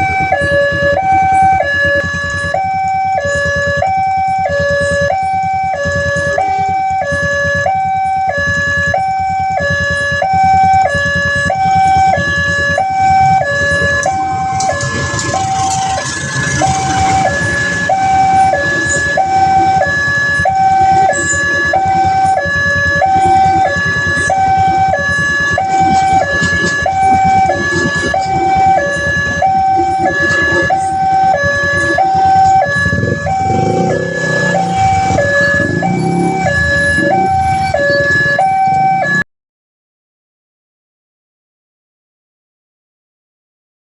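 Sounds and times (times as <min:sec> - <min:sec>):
two-tone level crossing siren: 0:00.0 - 0:39.3
broad rushing noise: 0:12.3 - 0:39.1.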